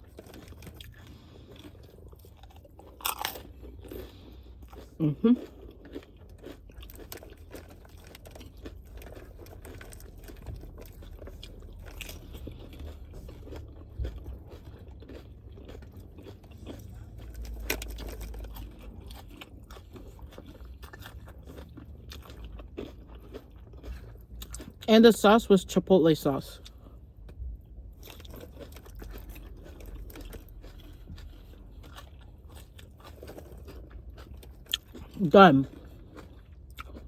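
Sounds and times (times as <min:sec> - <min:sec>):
person chewing crunchy chips: 0:00.0 - 0:37.0.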